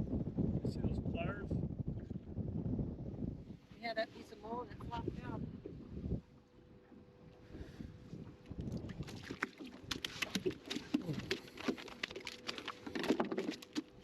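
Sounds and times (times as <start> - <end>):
clicks and knocks on plastic kayak: 9.9 - 14.0.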